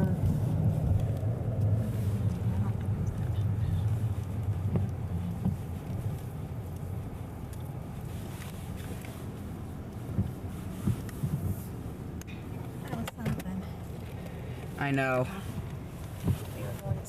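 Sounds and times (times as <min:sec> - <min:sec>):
car engine and road rumble: 0:00.0 - 0:17.0.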